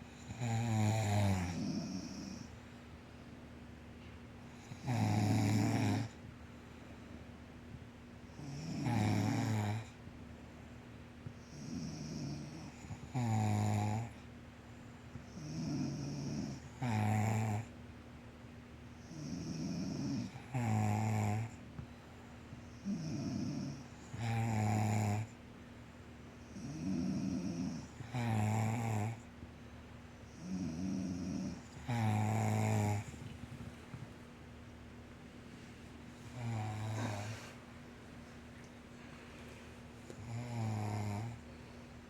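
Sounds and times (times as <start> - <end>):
quieter breathy snores: 0.0 - 2.8, 4.4 - 7.2, 8.3 - 10.0, 11.3 - 14.3, 15.0 - 17.8, 18.9 - 22.0, 22.6 - 25.4, 26.3 - 29.3, 30.2 - 34.2, 35.8 - 37.9, 39.0 - 42.0
loud rumbling snores: 0.2 - 2.5, 4.6 - 6.2, 8.4 - 9.9, 11.5 - 14.2, 15.3 - 17.7, 19.0 - 21.6, 22.8 - 25.3, 26.5 - 29.2, 30.3 - 33.3, 36.3 - 37.6, 40.2 - 41.5.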